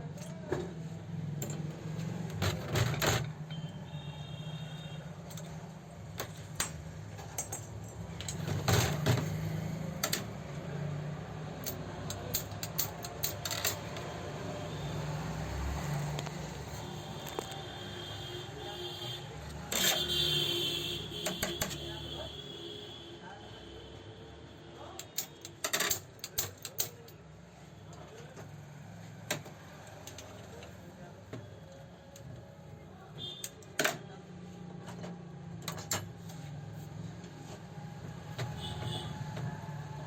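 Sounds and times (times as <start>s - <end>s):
metal parts and tools clicking: 1.3s - 3.7s, 5.2s - 10.5s, 11.5s - 14.2s, 19.5s - 20.2s, 21.2s - 21.8s, 25.0s - 27.3s, 34.8s - 36.4s.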